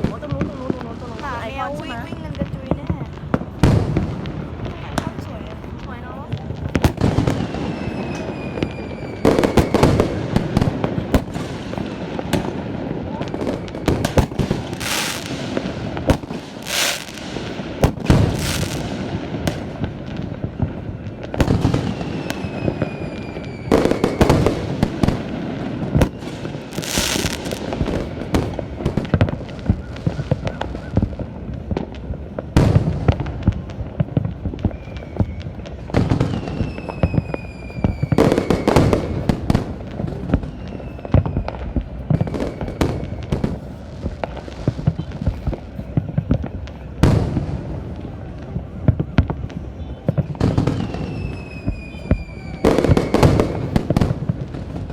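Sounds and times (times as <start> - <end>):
fireworks booming and crackling: 0.0 - 54.9
whistling firework shells: 6.7 - 12.6, 13.2 - 31.2, 34.5 - 43.7, 47.7 - 54.9.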